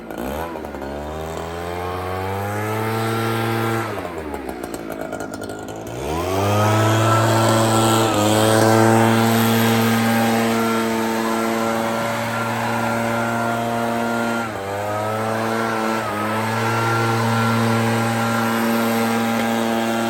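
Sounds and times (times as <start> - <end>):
backpack blower engine running: 0.0 - 20.0.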